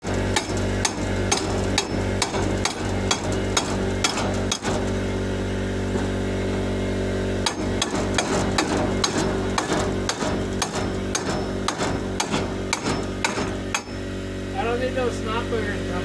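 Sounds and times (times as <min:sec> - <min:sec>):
steady low hum: 0:00.0 - 0:16.0
sharp metallic taps: 0:00.3 - 0:05.0, 0:07.4 - 0:14.0.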